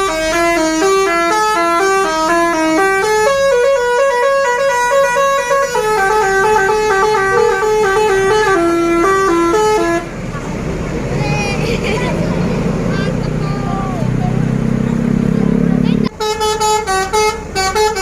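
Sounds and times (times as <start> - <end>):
bus horn playing a tune: 0.0 - 10.5, 16.0 - 18.0.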